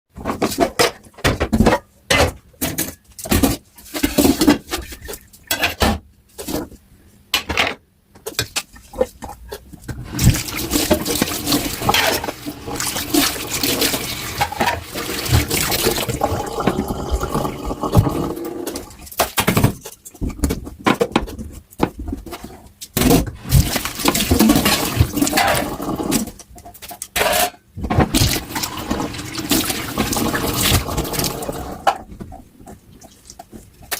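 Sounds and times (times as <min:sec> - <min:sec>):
water splashing and dishes clattering: 0:08.3 - 0:33.9.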